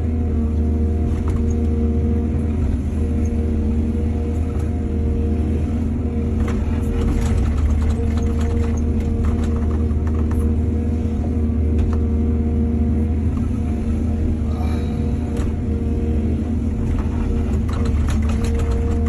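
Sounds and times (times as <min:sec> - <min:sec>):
excavator diesel engine droning: 0:00.0 - 0:19.0
clatter and clicks: 0:06.4 - 0:10.6, 0:16.8 - 0:19.0.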